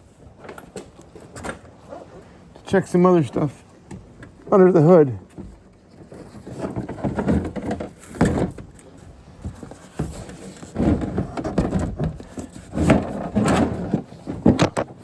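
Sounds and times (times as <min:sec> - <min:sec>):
knocks and rustling of handling: 0:05.2 - 0:15.0.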